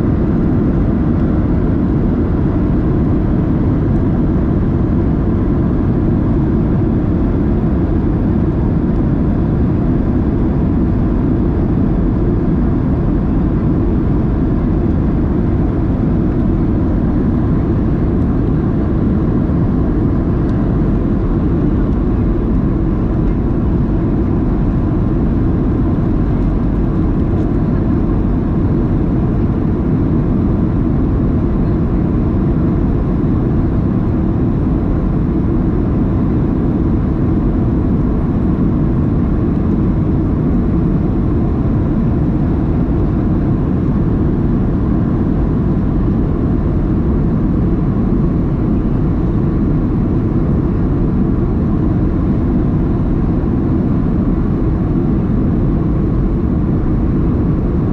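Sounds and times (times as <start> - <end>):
airplane cabin engine rumble: 0.0 - 57.9.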